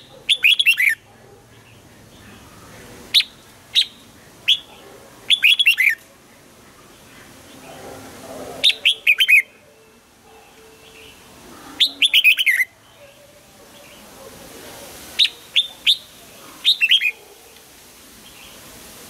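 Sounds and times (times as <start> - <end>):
bird singing: 0.0 - 6.0, 8.6 - 14.1.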